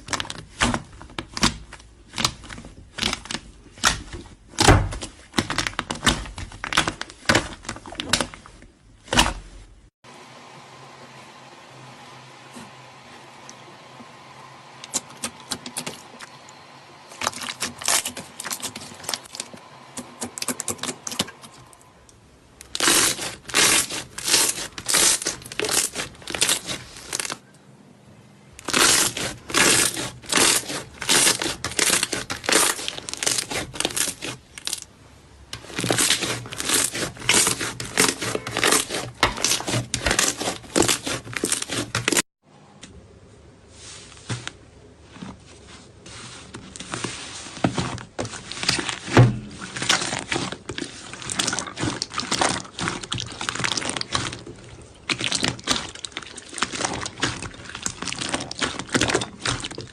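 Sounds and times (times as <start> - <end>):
slime crackling and popping: 0.0 - 9.3, 17.1 - 19.5, 22.6 - 27.4, 28.6 - 34.9, 35.6 - 42.2, 48.4 - 59.9.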